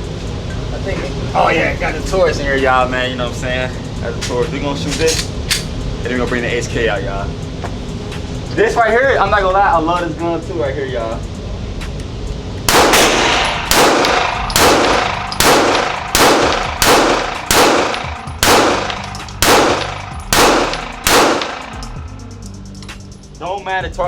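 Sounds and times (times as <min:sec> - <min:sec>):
handgun shots ringing indoors: 0:12.7 - 0:22.0.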